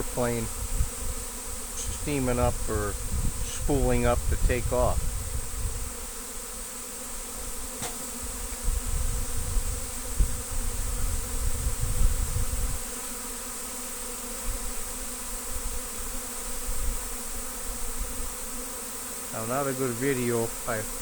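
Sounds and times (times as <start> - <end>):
bee swarm buzzing: 0.0 - 21.0
low rumbling on microphone: 1.8 - 5.8.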